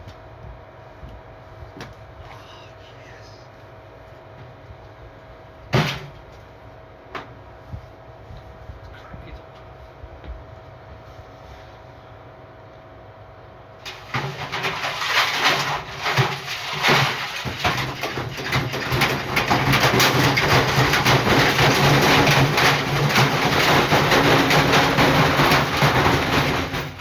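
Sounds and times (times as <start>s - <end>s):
washing machine motor and drum rattling: 13.8s - 27.0s.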